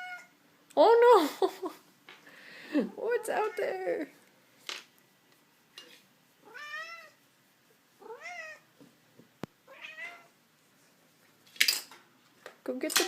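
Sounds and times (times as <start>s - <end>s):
cat meowing: 0.0s - 0.3s, 6.4s - 7.2s, 8.0s - 8.7s, 9.7s - 10.3s.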